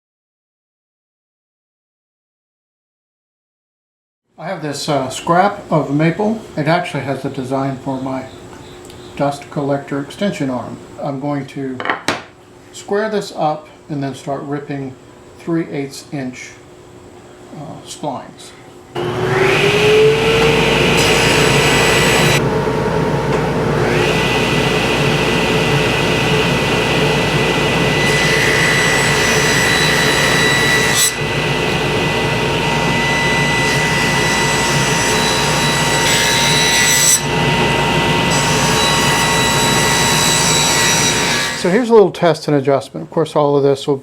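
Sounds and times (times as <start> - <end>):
table saw whining: 19.0 - 41.8.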